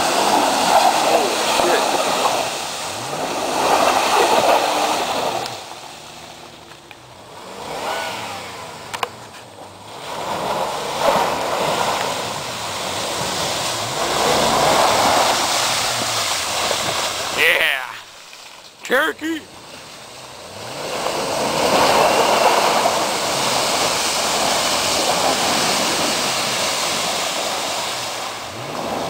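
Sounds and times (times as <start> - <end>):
engine revving: 0.0 - 18.2, 18.9 - 29.0
loud rushing noise: 10.0 - 18.2.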